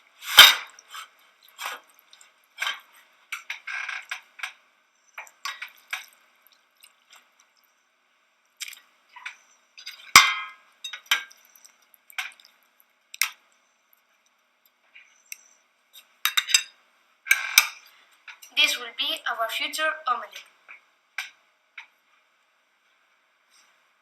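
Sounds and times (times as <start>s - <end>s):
wet squelches of mixing: 0.1s - 4.4s, 5.0s - 10.2s, 10.8s - 16.2s.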